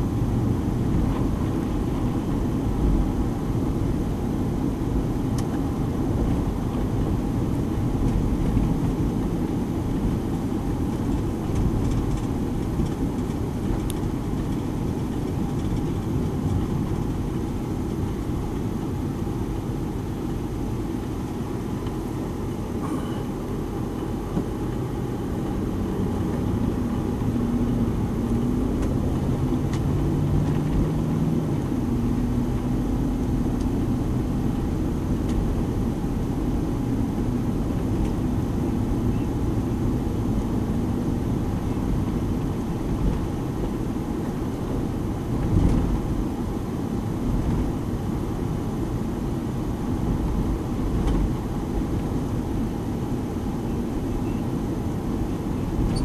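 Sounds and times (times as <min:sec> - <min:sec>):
engine running: 0:00.0 - 0:56.0
dense low drone: 0:22.2 - 0:47.9.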